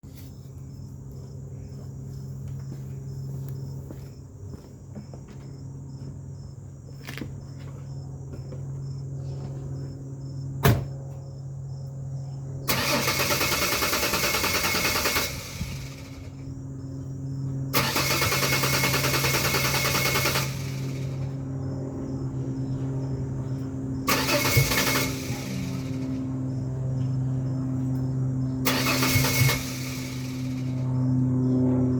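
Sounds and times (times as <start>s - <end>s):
steady low hum: 0.0s - 31.9s
engine cranking on starter: 12.7s - 16.3s, 17.7s - 21.3s, 24.1s - 26.2s, 28.6s - 30.8s.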